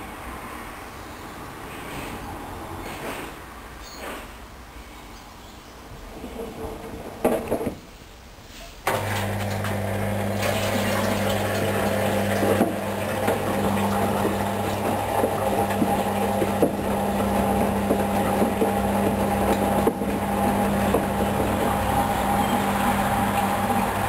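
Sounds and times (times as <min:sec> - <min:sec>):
water rushing: 0:08.9 - 0:24.0.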